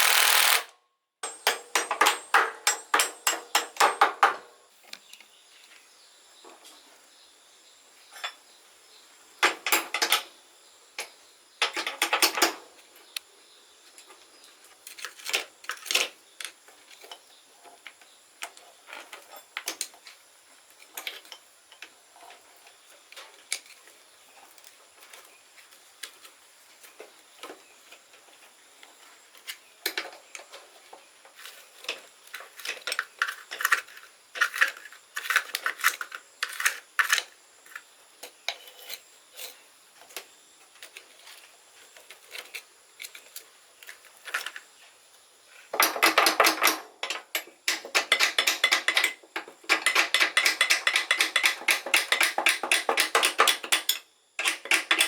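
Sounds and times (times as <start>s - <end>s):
metal tools clinking and tapping: 1.2s - 4.5s, 9.4s - 10.3s, 45.8s - 55.0s.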